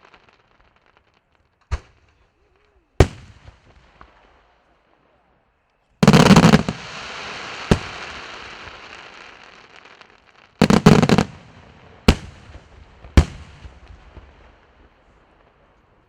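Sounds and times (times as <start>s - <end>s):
fireworks crackle: 0.0s - 4.7s, 6.0s - 16.0s
fireworks bangs: 6.0s - 16.0s.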